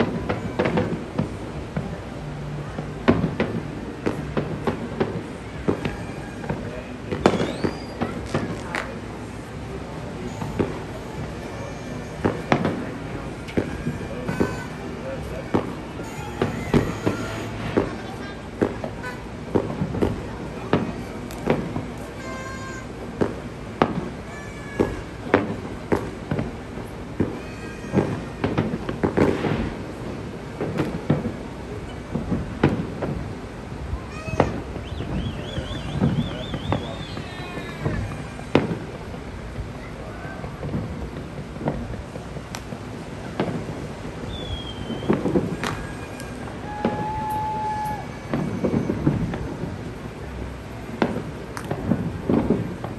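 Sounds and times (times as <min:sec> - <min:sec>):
fireworks banging: 0:00.0 - 0:52.9
firework rising whistle: 0:04.4 - 0:20.8, 0:21.4 - 0:26.4, 0:34.2 - 0:39.2, 0:43.3 - 0:52.6.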